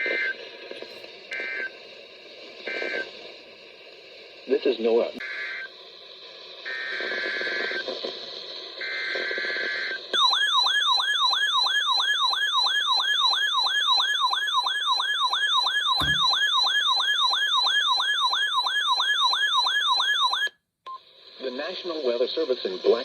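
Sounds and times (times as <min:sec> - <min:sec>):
electronic warbling siren alarm: 0:10.2 - 0:20.5
thump: 0:16.0 - 0:16.4.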